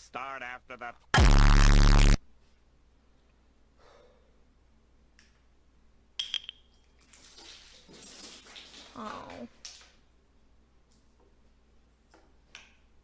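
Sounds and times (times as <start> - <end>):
faint breath: 3.8 - 4.5.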